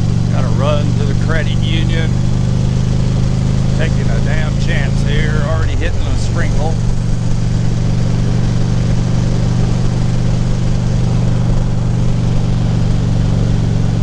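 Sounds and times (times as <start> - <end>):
motorcycle engine running steadily: 0.0 - 14.0.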